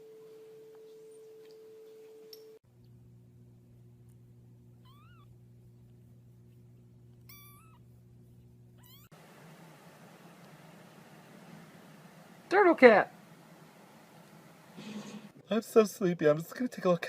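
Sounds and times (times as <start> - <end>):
low electrical hum: 0.0 - 17.0
cat meowing: 4.8 - 5.3, 7.3 - 7.8, 8.8 - 9.1.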